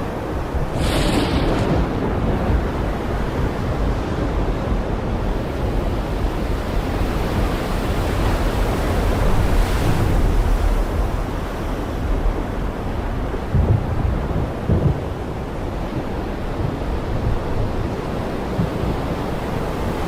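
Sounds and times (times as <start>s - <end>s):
heavy rain hissing: 0.6s - 2.8s.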